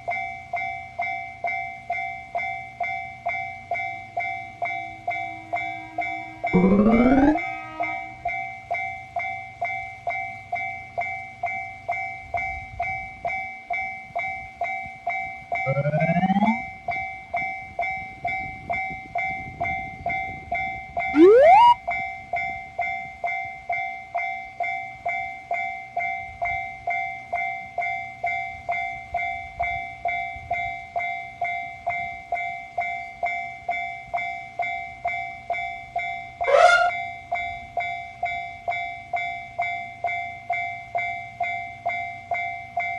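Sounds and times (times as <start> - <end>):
railroad crossing bell ringing: 0.0 - 21.2, 21.8 - 42.9
rising whistle-like glides: 6.6 - 7.4, 15.7 - 16.6, 21.2 - 21.8.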